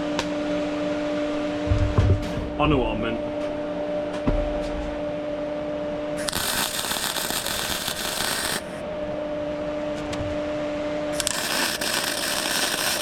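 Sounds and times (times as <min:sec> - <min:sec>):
low hum: 0:00.6 - 0:13.0
arc welding crackle: 0:06.2 - 0:08.8, 0:11.2 - 0:13.0.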